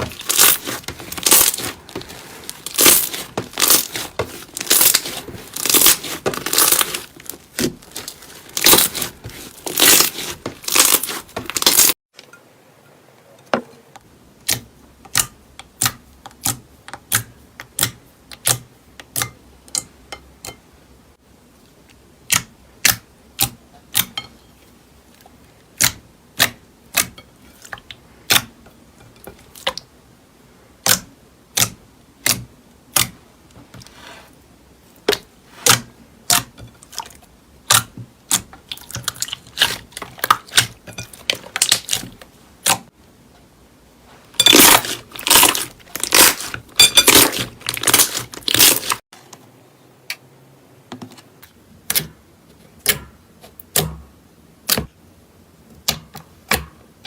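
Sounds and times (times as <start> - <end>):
slime crackling and crunching: 0.0 - 12.0, 44.4 - 49.0.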